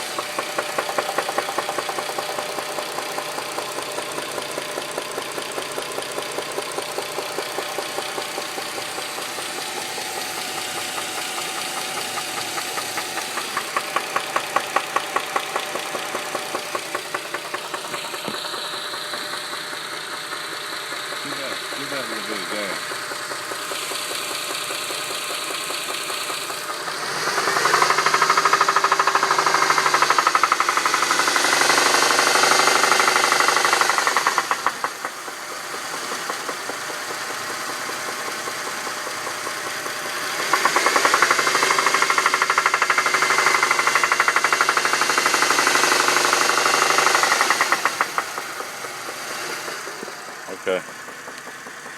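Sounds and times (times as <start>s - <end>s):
car engine revving: 0.0s - 51.9s
rapid engine knock: 0.0s - 51.9s.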